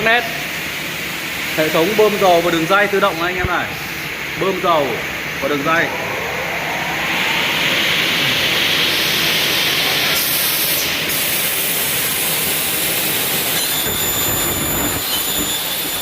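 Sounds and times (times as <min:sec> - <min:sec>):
thin high whine: 0:05.2 - 0:10.4.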